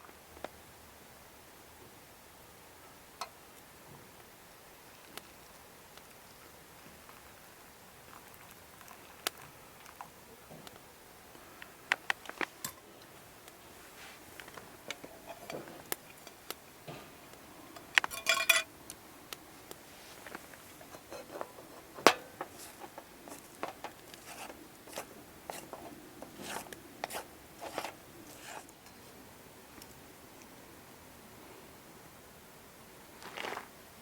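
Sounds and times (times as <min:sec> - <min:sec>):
ringing metal clink: 0:18.1 - 0:18.7.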